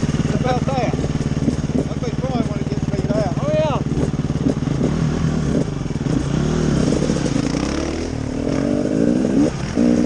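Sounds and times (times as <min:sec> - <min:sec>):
off-road vehicle engine revving: 0:00.0 - 0:10.0.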